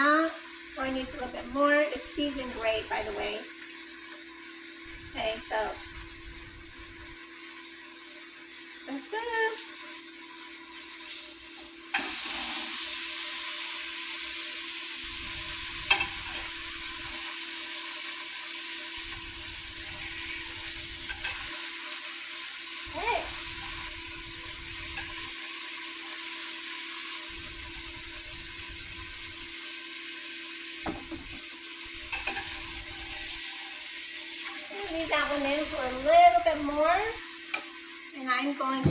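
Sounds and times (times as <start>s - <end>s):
meat sizzling in a pan: 0.0s - 38.9s
utensil knocks: 30.8s - 31.4s.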